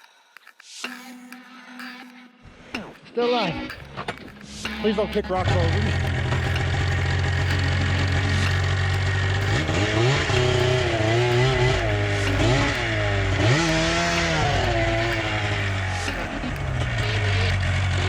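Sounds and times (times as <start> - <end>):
snowmobile engine idling and revving: 4.6 - 18.0.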